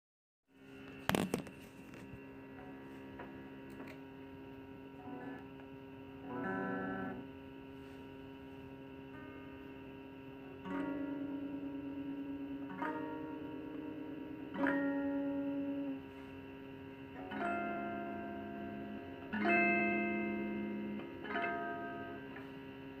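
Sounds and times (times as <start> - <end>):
electrical hum: 0.5 - 23.0
plucked string notes: 10.4 - 16.0, 17.1 - 22.5.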